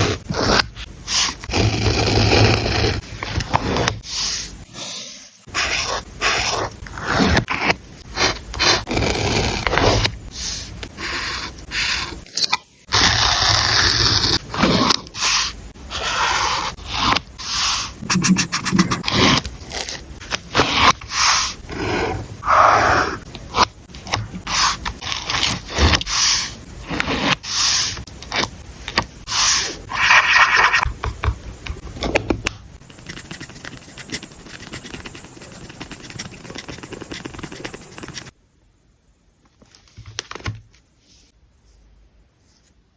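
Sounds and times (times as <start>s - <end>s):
paper scraping and rustling: 33.0s - 38.3s.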